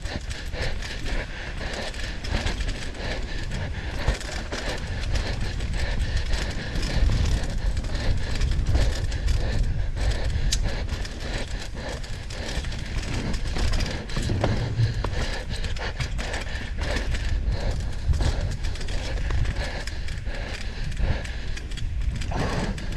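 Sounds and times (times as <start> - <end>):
bike rattling clicks and knocks: 0.0 - 22.9
wind rumble on microphone: 0.0 - 22.9
tyres on dirt: 10.5 - 21.0, 21.6 - 22.9.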